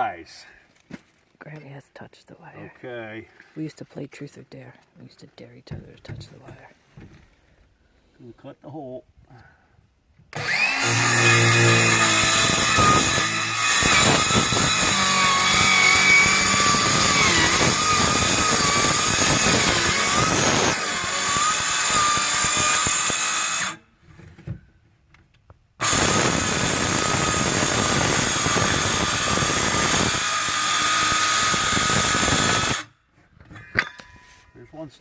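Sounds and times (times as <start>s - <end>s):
electric power saw cutting: 10.3s - 23.8s, 25.8s - 32.9s.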